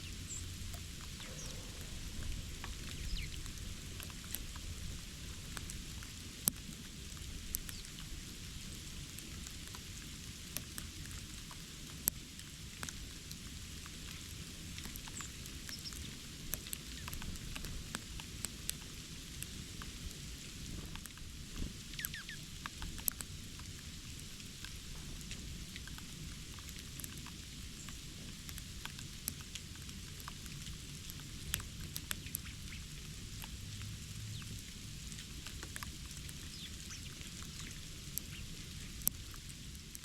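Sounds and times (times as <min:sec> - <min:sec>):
steady low rumble: 0:00.0 - 0:06.2
light taps and ticks: 0:00.3 - 0:08.2, 0:09.1 - 0:40.0
faint high bird chirps: 0:22.0 - 0:22.4.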